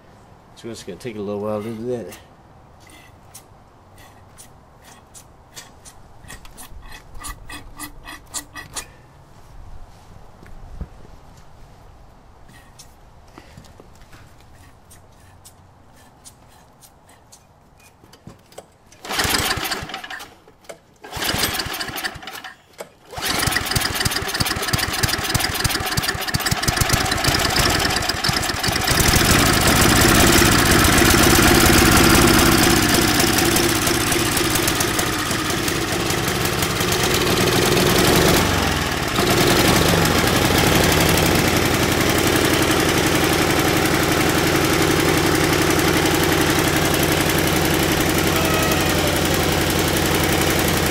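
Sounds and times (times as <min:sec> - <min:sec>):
small gasoline engine running: 0:19.0 - 0:20.3, 0:21.0 - 0:50.9.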